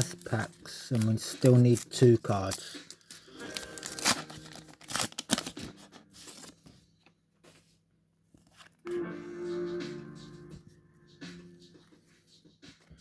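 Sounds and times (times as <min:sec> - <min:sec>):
wrapper being torn open: 0:00.0 - 0:06.6.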